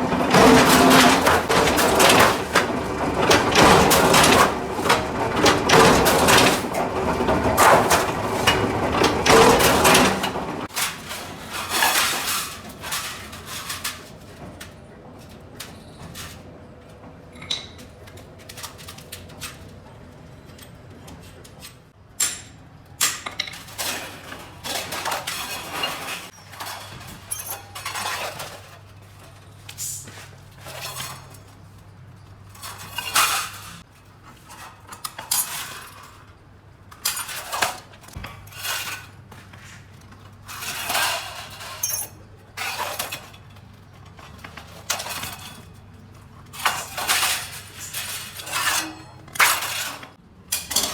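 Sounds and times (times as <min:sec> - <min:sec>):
sheet metal clanking: 0:00.0 - 0:14.1.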